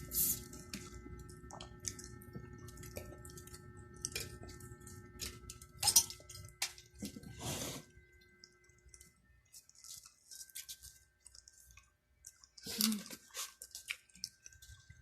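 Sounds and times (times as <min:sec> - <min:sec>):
person chewing: 0:08.5 - 0:15.0.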